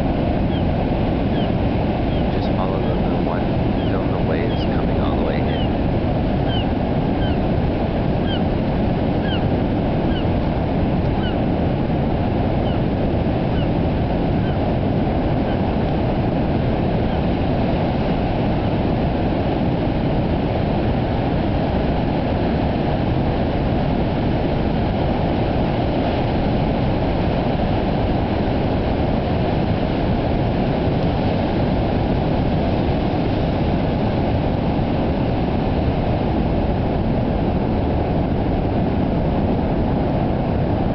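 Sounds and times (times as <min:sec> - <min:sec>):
ocean surf breaking: 0:00.0 - 0:40.9.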